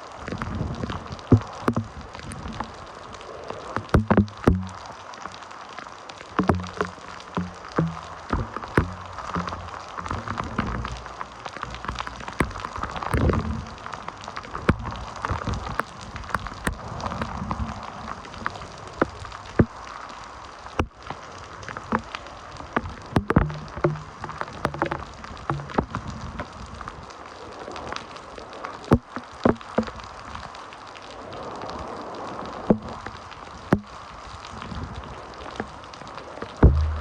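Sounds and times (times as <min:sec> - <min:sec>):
drips striking hard surface: 0:01.4 - 0:01.9, 0:03.9 - 0:04.8, 0:06.4 - 0:13.4, 0:14.7 - 0:17.4, 0:23.2 - 0:26.0, 0:29.0 - 0:30.0, 0:36.6 - 0:37.0.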